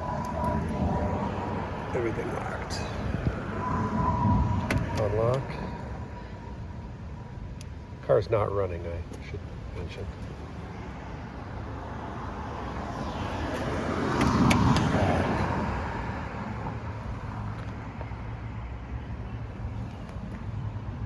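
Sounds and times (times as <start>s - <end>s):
car passing by: 0.0s - 6.8s, 9.8s - 18.0s.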